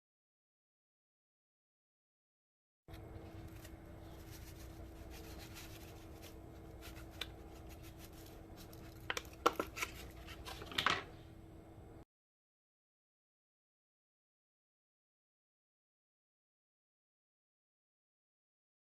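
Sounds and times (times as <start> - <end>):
faint hum: 2.9 - 12.1.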